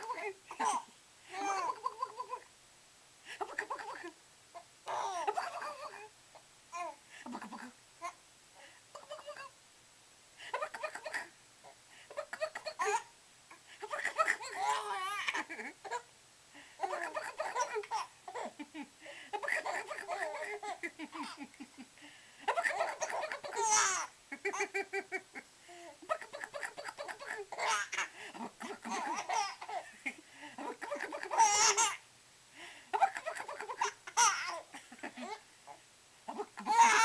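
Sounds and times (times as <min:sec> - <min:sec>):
baby laughing: 0:00.0 - 0:02.5, 0:04.9 - 0:06.1, 0:09.0 - 0:09.6, 0:10.6 - 0:11.3, 0:12.1 - 0:13.1, 0:13.8 - 0:16.1, 0:16.8 - 0:21.6, 0:22.4 - 0:25.2, 0:26.0 - 0:32.0, 0:33.0 - 0:35.4, 0:36.3 - 0:37.0.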